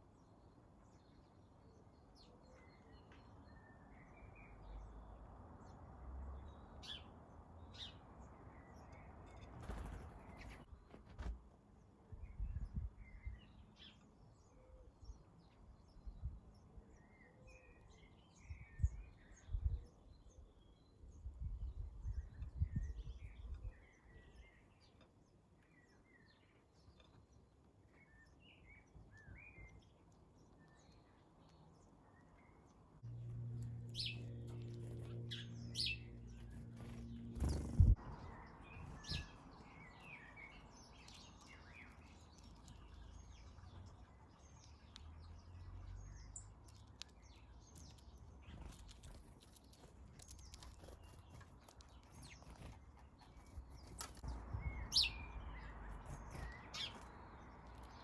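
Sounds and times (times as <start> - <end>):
small birds chirping: 0.0 - 58.0
low steady hum: 33.0 - 38.0.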